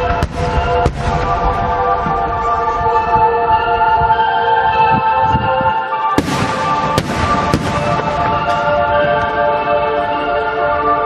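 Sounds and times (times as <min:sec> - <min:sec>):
fireworks crackling and rumbling: 0:00.0 - 0:03.2, 0:06.2 - 0:10.2
music with long held notes: 0:00.0 - 0:11.0.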